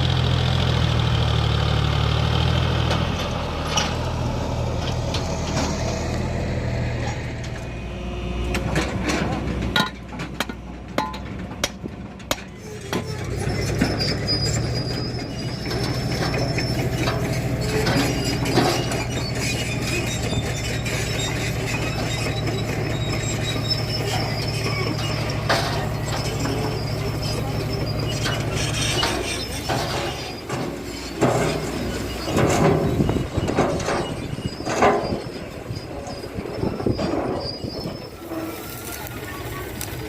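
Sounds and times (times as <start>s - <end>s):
diesel machinery engine running: 0.0s - 40.0s
metal clanking and rattling: 8.5s - 38.5s.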